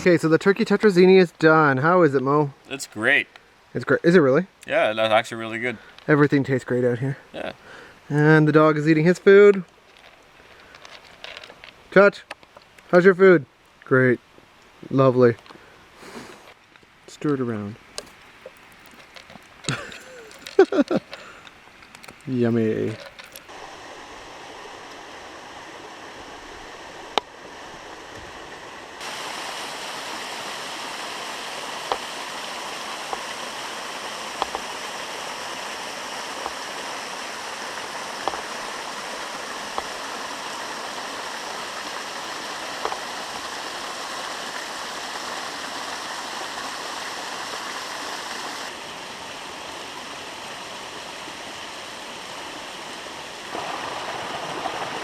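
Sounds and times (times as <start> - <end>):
water flowing over rocks: 14.6 - 55.0.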